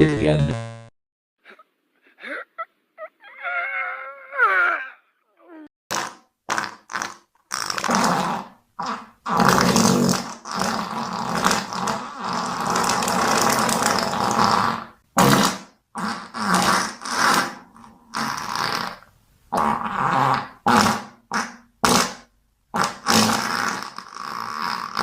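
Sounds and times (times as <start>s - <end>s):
fart sounds: 5.9s - 25.0s.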